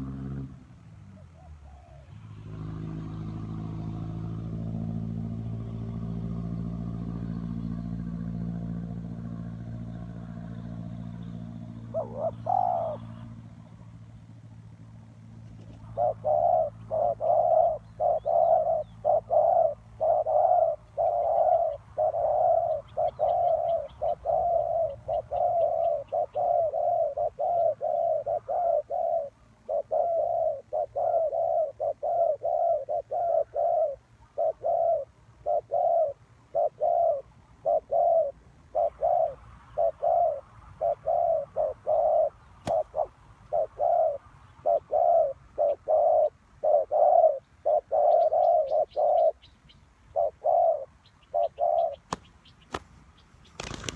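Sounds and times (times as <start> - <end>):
dove cooing: 1.1 - 3.4, 11.6 - 13.7, 15.4 - 52.6.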